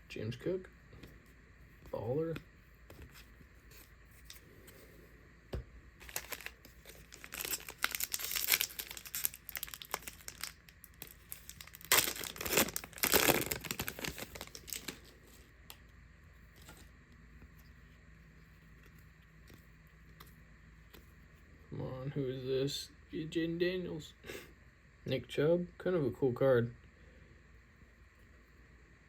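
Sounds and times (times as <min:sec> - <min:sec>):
foil wrapper tearing and crinkling: 0:06.0 - 0:15.4.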